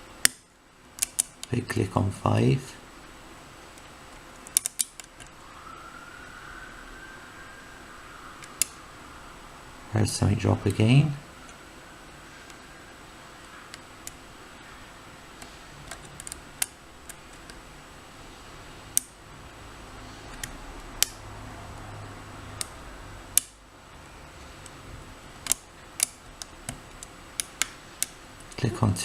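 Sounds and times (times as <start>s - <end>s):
lock pick clicking on pins: 1.0s - 1.5s, 3.8s - 5.3s, 25.4s - 28.6s.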